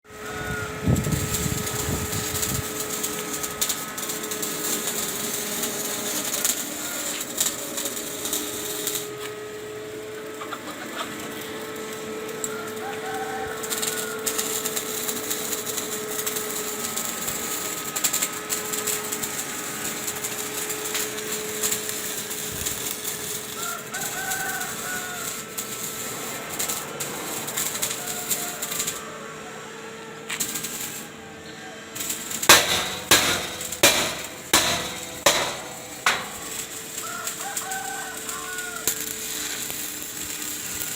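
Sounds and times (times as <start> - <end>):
steady hum: 24.6 - 37.4.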